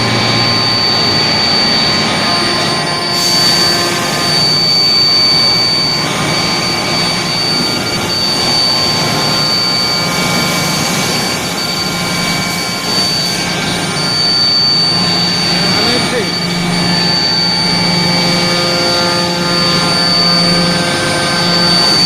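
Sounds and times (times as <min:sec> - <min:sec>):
high-pitched machine whine: 0:00.0 - 0:22.0
loud machinery noise: 0:00.0 - 0:22.0.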